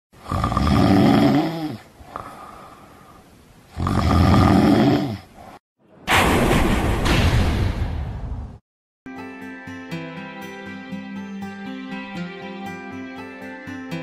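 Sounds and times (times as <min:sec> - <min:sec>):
person snoring loudly: 0:00.2 - 0:02.8, 0:03.7 - 0:05.4.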